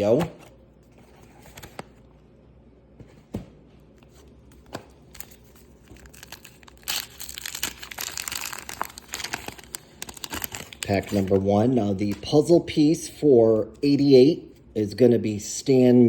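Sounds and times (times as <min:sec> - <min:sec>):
wax paper crinkling and tearing: 0:05.1 - 0:11.5.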